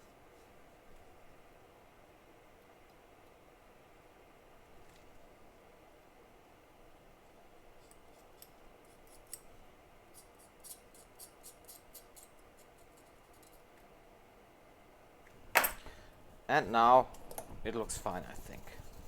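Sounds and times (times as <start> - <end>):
small metal tools clicking: 10.2 - 13.6.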